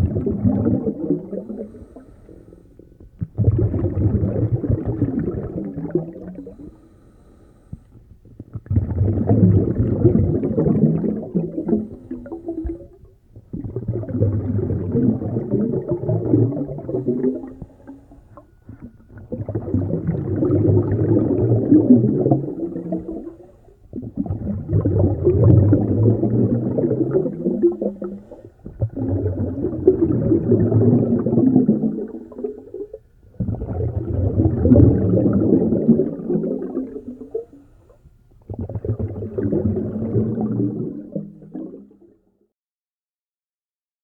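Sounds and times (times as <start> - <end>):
bubbling exhalations: 0.0 - 37.6, 38.5 - 41.9
diver breathing through regulator: 1.3 - 2.9, 6.4 - 8.0.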